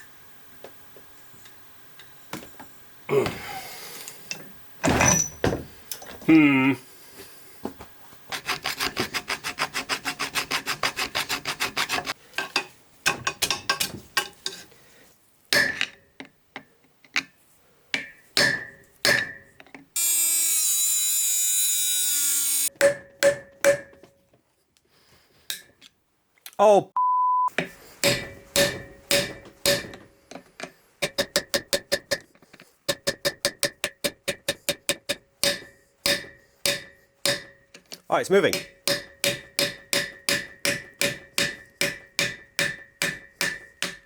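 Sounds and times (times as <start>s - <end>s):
steady high hiss: 0.0s - 8.1s.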